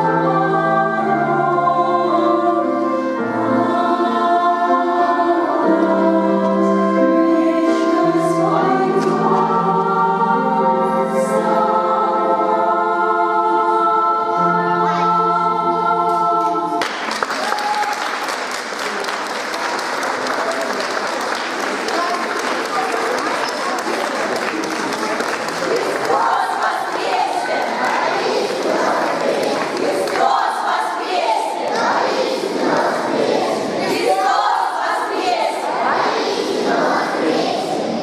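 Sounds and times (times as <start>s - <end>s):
choir singing: 0.0s - 17.2s, 24.2s - 38.0s
applause: 16.8s - 30.5s.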